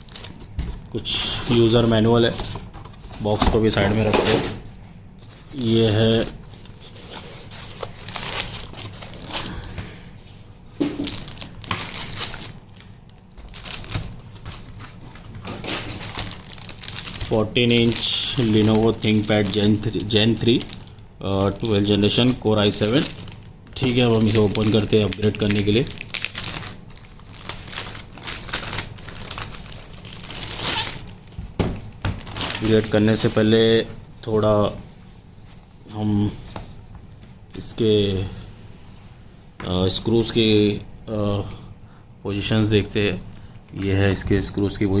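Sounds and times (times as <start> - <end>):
packaging rustling and crinkling: 0.0 - 4.5, 5.2 - 35.6.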